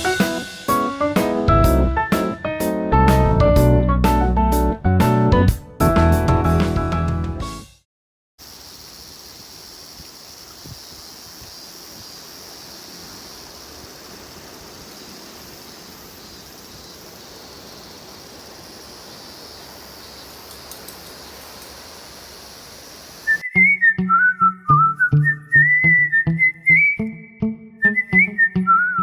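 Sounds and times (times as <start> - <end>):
outdoor ambience with high hiss: 8.4 - 23.4
faint ticks: 20.2 - 21.9.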